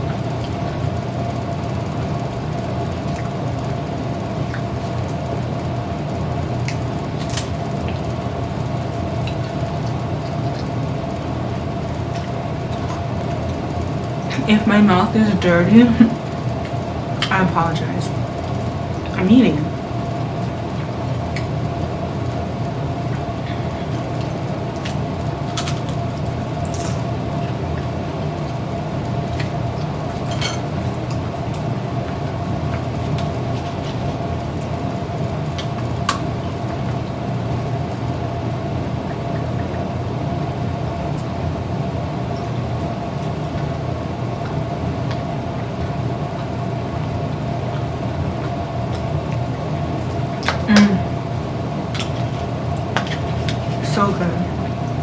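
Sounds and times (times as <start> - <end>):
machine-like hum: 0.0 - 55.0
faint eating clicks and taps: 9.0 - 11.3, 47.6 - 51.0, 51.9 - 53.8.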